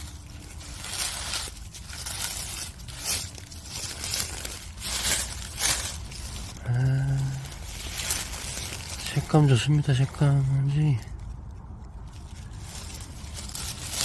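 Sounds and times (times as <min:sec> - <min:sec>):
dry leaves rustling and crunching: 0:00.0 - 0:14.0.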